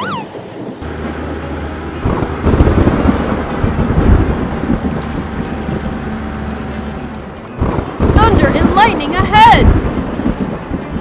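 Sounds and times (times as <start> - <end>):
wind: 0.0 - 11.0
rolling crackling thunder: 0.8 - 6.6, 7.5 - 11.0.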